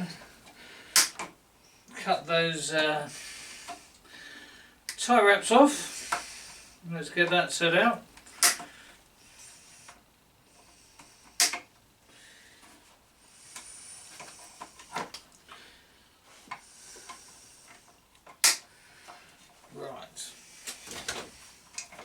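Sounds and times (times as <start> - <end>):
sharp clicks: 1.0 - 1.3, 8.2 - 8.7, 11.4 - 11.6, 18.2 - 18.7.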